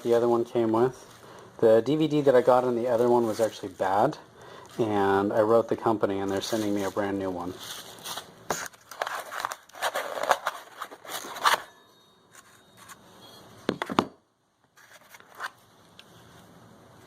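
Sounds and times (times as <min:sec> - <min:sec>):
packaging rustling and crinkling: 0:06.3 - 0:11.7.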